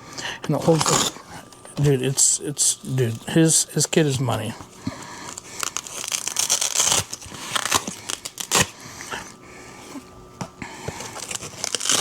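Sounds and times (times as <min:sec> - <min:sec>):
short ripping: 0:05.6 - 0:08.7, 0:11.2 - 0:12.0.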